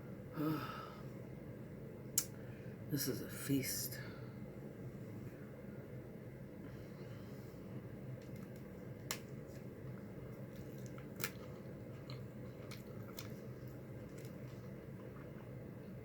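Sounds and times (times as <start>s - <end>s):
steady low hum: 0.0s - 16.0s
chewing: 9.5s - 16.0s.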